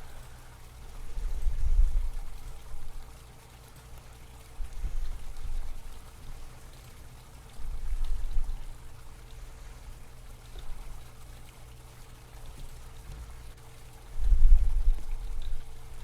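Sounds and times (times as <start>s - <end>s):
low rumbling on microphone: 0.0s - 3.0s, 14.1s - 16.0s
faint steady hum: 0.0s - 16.0s.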